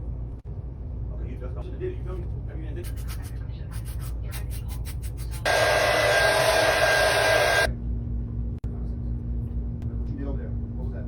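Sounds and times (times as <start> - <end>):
steady low hum: 0.0 - 11.0
hair dryer blowing: 5.4 - 7.7.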